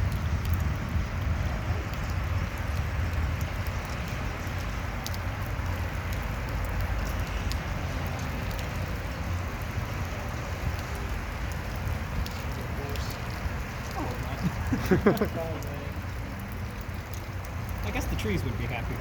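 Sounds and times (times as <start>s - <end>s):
wind rumble on microphone: 0.0s - 15.2s
rain hissing: 0.0s - 19.0s.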